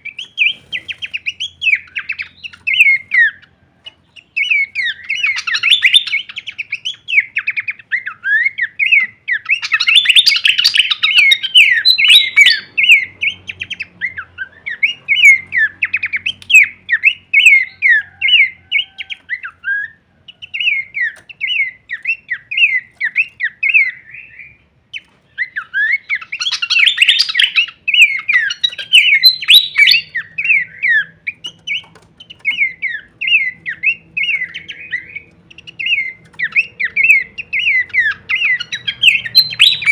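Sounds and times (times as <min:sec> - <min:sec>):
bird chirping song: 0:00.0 - 0:39.9.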